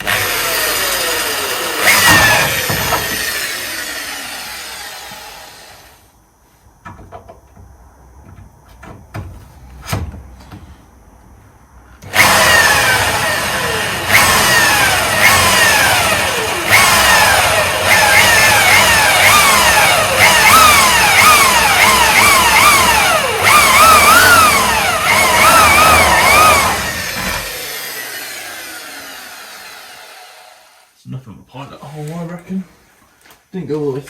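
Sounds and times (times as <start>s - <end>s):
electric drill boring: 0.0s - 6.0s, 12.0s - 30.9s.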